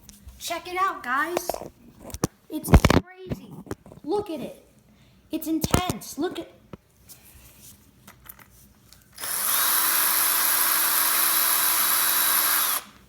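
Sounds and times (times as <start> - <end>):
small power tool whining: 9.2 - 13.0.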